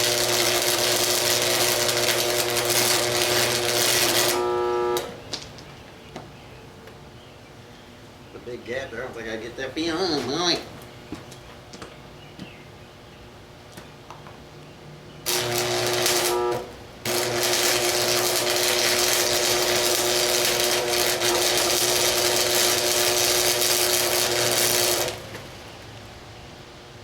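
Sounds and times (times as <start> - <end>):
welding arc crackling and hissing: 0.0 - 5.5, 15.3 - 26.1
steady electrical hum: 0.0 - 27.0.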